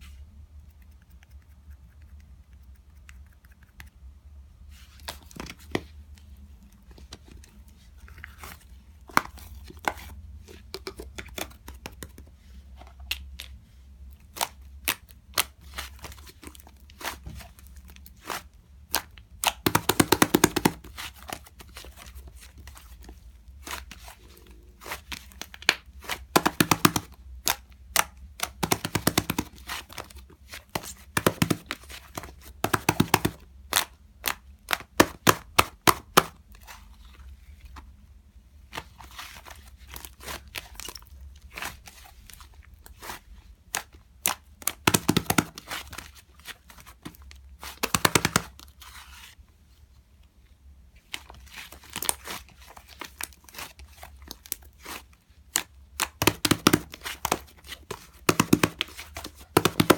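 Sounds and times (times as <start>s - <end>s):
clicks taps and crinkling: 5.0s - 18.1s.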